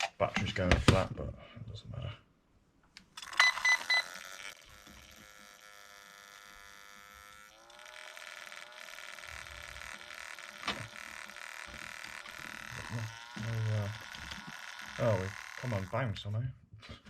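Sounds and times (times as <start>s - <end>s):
small cooling fan whirring: 3.2s - 16.3s.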